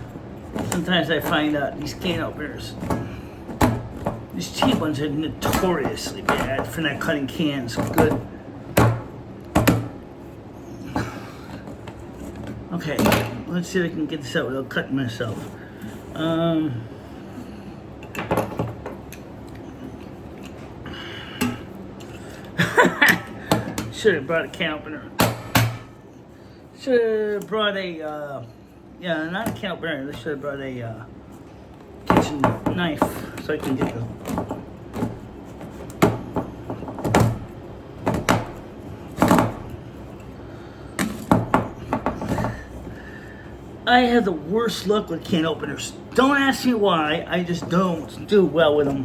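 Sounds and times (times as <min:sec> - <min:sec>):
can opener knocking and scraping: 0:00.0 - 0:10.0, 0:32.0 - 0:39.8.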